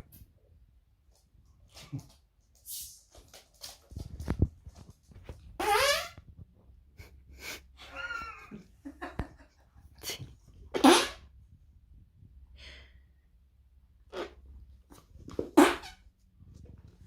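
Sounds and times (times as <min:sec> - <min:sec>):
dog sneezing: 0:10.7 - 0:11.2.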